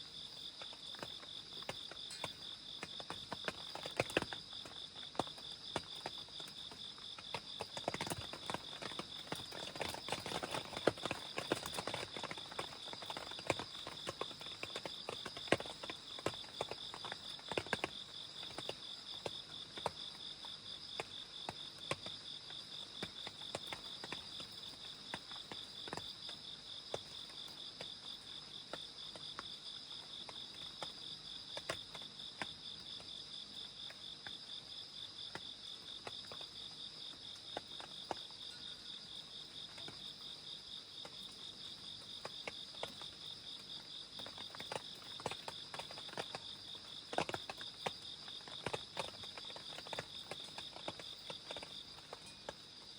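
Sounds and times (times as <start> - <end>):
rain dripping taps: 0.1 - 52.9.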